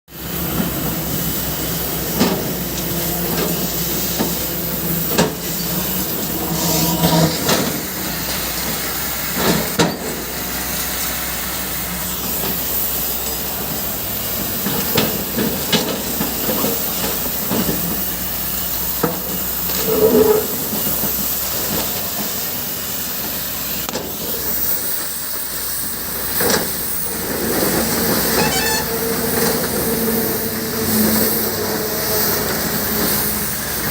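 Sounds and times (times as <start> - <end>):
diesel engine running: 0.1 - 33.9
hissing noise: 0.2 - 33.9.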